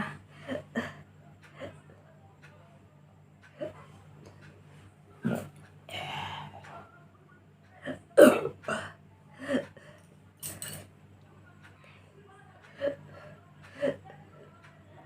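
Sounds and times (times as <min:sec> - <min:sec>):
woman burping: 0:05.2 - 0:05.5, 0:07.8 - 0:09.6.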